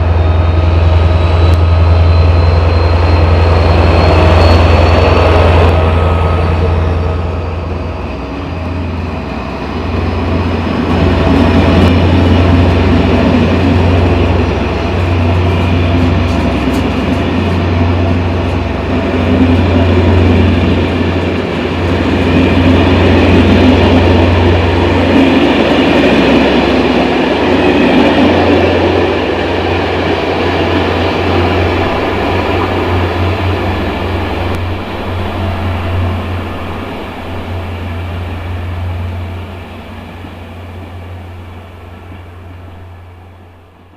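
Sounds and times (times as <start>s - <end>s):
diesel locomotive engine droning: 0.0s - 43.9s
faint high whine rising: 30.7s - 42.0s.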